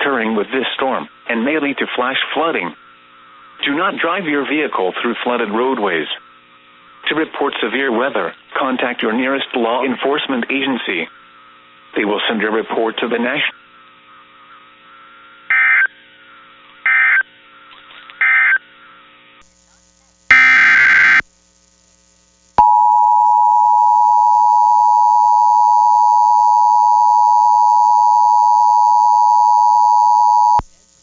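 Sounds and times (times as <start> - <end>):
loud steady alert tone: 20.3 - 21.2
screeching digital data bursts: 20.3 - 21.2.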